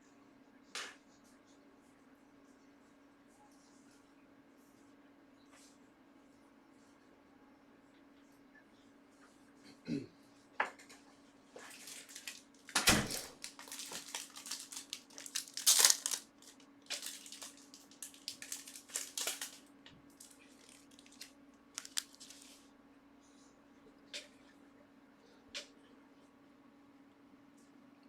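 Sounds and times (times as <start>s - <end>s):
faint steady hum: 0.0s - 28.0s
wrappers tearing and crinkling: 11.6s - 22.6s.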